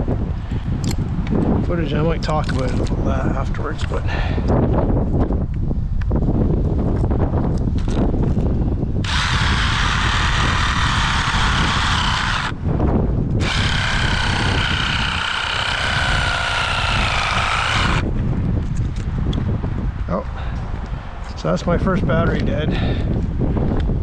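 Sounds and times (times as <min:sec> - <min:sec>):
wind rumble on microphone: 0:00.0 - 0:24.0
reciprocating saw cutting branch: 0:09.0 - 0:12.6, 0:13.4 - 0:18.0.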